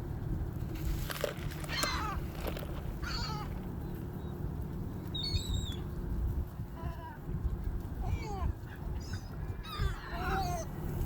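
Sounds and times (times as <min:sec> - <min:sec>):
low background rumble: 0:00.0 - 0:11.0
birds calling: 0:01.5 - 0:06.1, 0:08.0 - 0:10.8.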